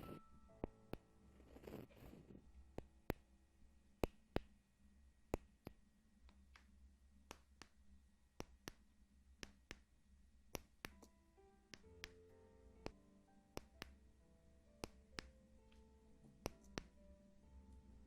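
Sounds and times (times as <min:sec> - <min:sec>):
soft sustained musical tones: 0:00.0 - 0:01.5, 0:10.9 - 0:18.0
sharp clicks and taps: 0:04.0 - 0:04.6, 0:05.3 - 0:09.9, 0:10.5 - 0:14.0, 0:14.8 - 0:17.0.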